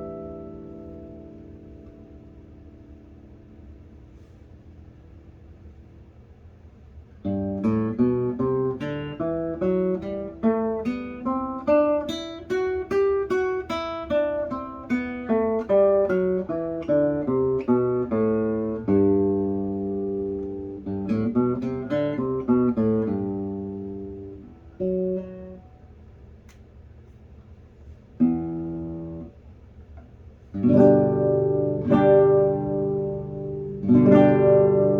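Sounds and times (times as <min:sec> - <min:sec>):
acoustic guitar plucked notes: 0:00.0 - 0:04.3, 0:07.3 - 0:25.8, 0:30.6 - 0:34.9.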